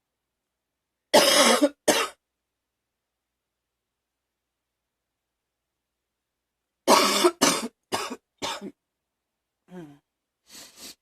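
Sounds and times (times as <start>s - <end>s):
girl coughing: 1.2s - 2.2s, 6.9s - 8.8s.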